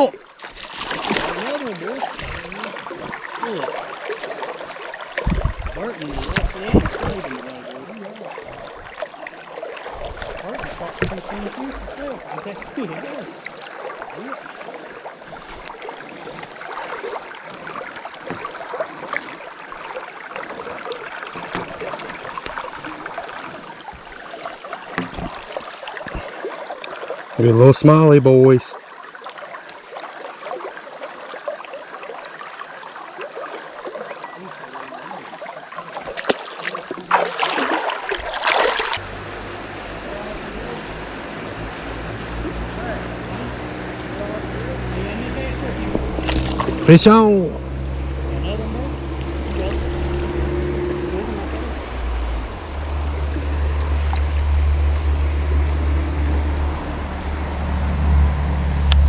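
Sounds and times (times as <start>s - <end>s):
small water splashes: 0.0s - 55.9s
river water running: 0.0s - 59.0s
low rumble: 47.5s - 59.0s.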